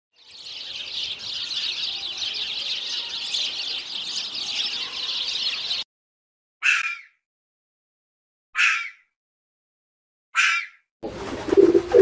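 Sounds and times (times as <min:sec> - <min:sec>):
many small birds chirping: 0:00.2 - 0:05.8.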